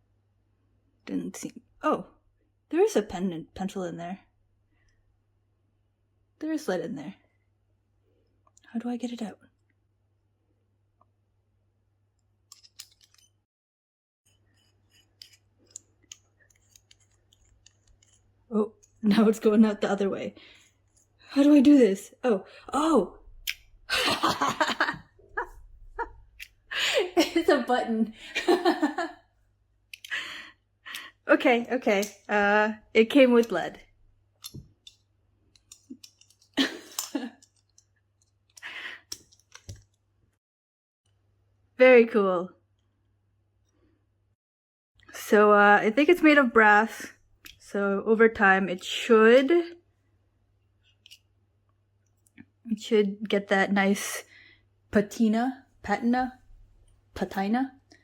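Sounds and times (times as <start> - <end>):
mechanical pencil clicks and taps: 14.6 - 18.2, 34.4 - 37.8, 38.5 - 40.0.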